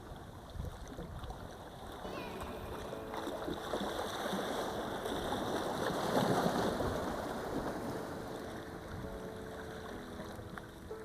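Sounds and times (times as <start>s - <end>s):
sea waves washing against rocks: 2.1s - 10.8s.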